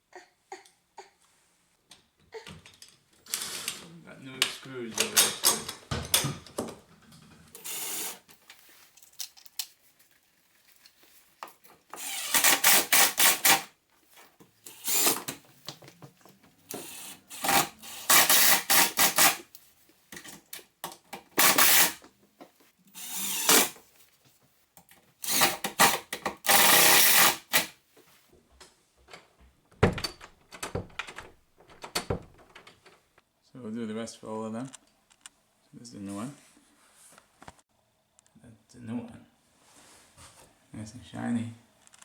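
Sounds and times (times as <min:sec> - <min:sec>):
power drill driving screws: 0:07.6 - 0:08.3, 0:11.9 - 0:13.7, 0:14.7 - 0:15.4, 0:16.7 - 0:19.5, 0:21.3 - 0:22.0, 0:22.9 - 0:23.8, 0:25.2 - 0:27.7.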